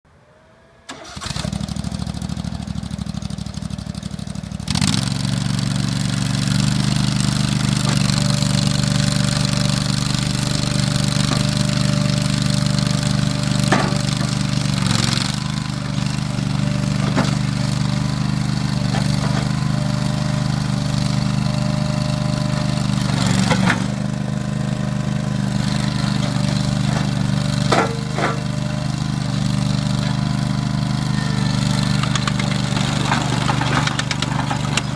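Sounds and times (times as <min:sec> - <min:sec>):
engine starter cranking: 0:00.9 - 0:01.8
engine running steadily: 0:00.9 - 0:34.9.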